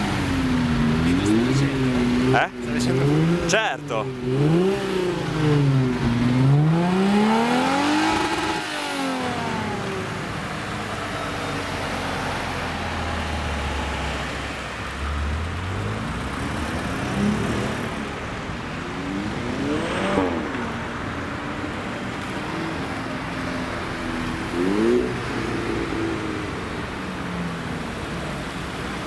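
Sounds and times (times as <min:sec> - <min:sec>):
low engine rumble: 0:00.0 - 0:06.6
car engine revving: 0:00.0 - 0:29.0.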